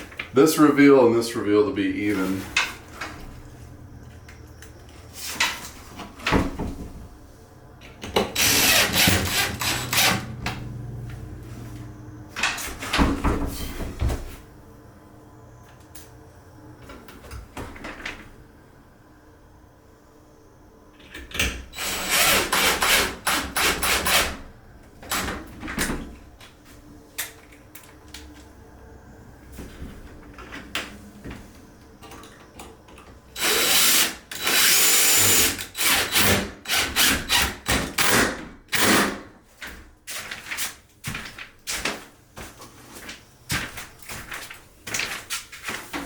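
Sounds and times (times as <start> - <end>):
power drill driving screws: 8.3 - 10.3, 21.8 - 24.4, 33.4 - 39.2.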